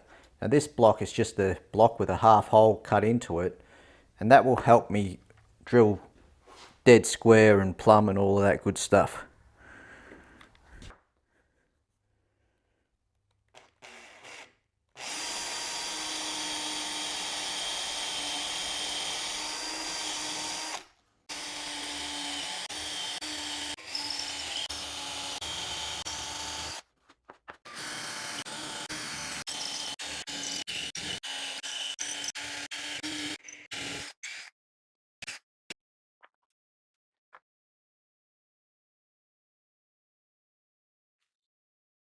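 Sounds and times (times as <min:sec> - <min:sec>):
cordless drill boring wood: 0:13.5 - 0:26.8, 0:27.7 - 0:34.5.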